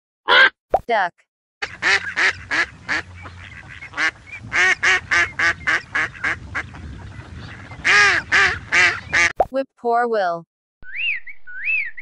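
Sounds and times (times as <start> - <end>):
duck quacking: 1.6 - 9.4.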